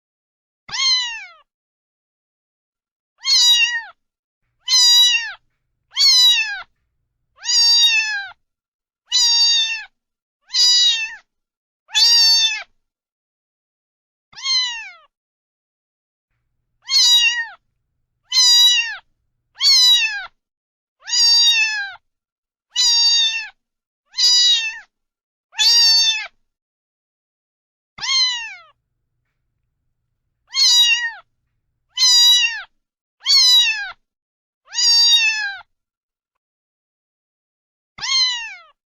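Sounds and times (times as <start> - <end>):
cat meowing: 3.2 - 3.9, 4.6 - 6.8, 7.4 - 8.3, 10.5 - 11.2, 14.4 - 15.0, 16.8 - 17.6, 18.3 - 20.3, 28.0 - 28.7, 30.5 - 31.2, 31.9 - 32.7, 38.0 - 38.7.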